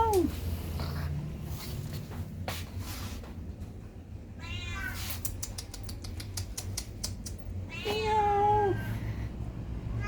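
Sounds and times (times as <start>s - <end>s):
cat meowing: 4.4s - 5.2s, 7.6s - 9.1s.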